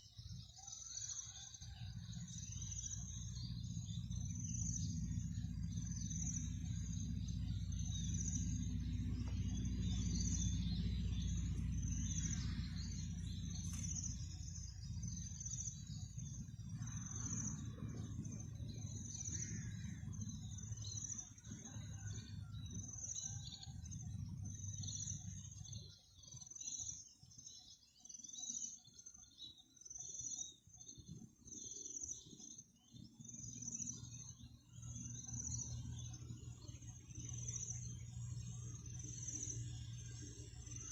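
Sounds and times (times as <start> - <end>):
low rumble: 1.9 - 25.9
insect chirping: 2.2 - 21.2
small birds calling: 2.2 - 23.7.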